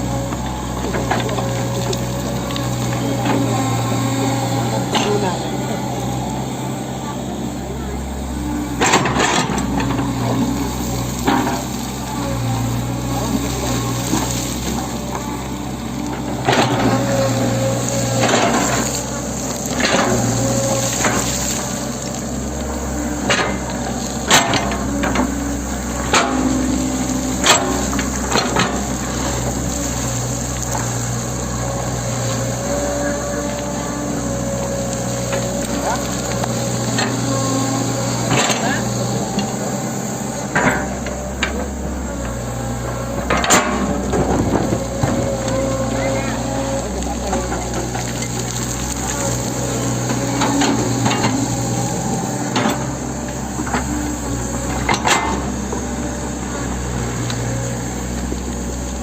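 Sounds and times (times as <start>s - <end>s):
excavator hydraulic whine: 0.0s - 59.0s.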